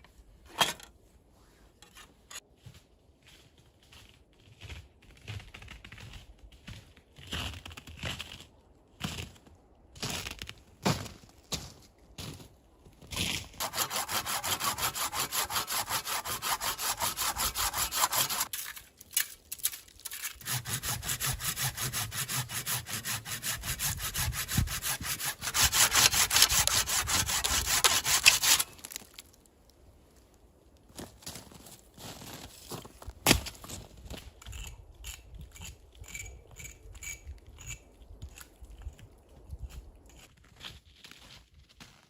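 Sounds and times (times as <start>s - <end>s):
hand saw cutting wood: 13.6s - 18.8s, 20.0s - 28.8s.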